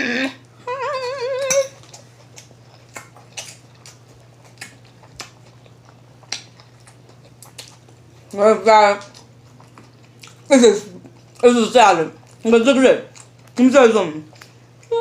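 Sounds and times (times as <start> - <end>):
person humming: 0.0 - 1.8.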